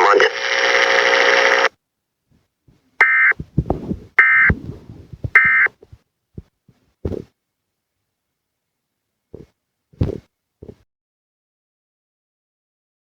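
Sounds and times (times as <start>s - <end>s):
dull thumps: 2.7s - 7.4s, 9.4s - 10.8s.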